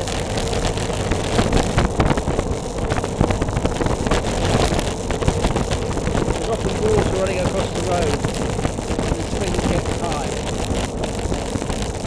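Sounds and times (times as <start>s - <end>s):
wind buffeting microphone: 0.0s - 12.0s.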